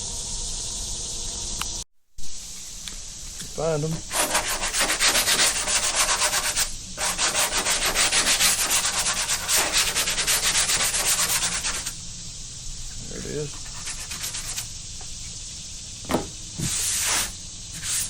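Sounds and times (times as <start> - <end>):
sandpaper on sanding block: 4.1 - 12.0, 13.4 - 14.7, 16.6 - 18.0.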